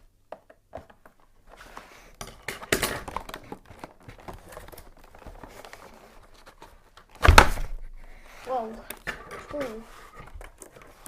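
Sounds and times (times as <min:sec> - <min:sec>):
cardboard packaging being opened: 0:02.7 - 0:07.8.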